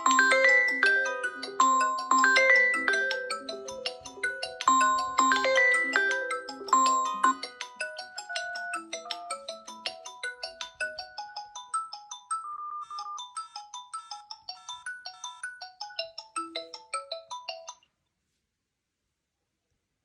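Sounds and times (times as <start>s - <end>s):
phone ringtone mallet melody: 0.0s - 17.8s.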